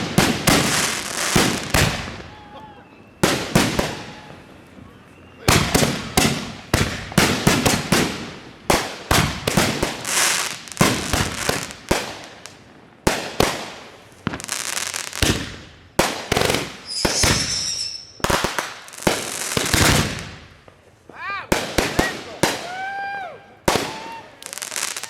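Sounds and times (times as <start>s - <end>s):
high firework whistle: 0.0s - 7.0s, 16.8s - 18.5s
fireworks bangs with crackling hiss: 0.0s - 25.0s.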